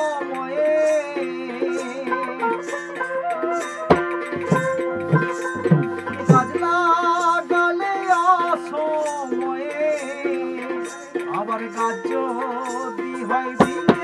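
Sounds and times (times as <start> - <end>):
hand-drum strokes: 1.9 - 7.5, 13.6 - 14.0
vibrato melody: 2.0 - 7.2.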